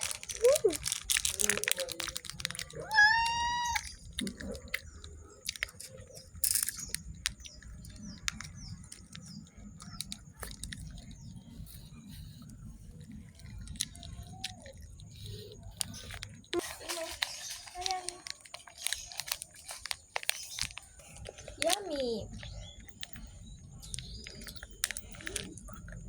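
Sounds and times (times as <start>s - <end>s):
chewing: 0.0s - 26.0s
cat meowing: 2.8s - 3.9s.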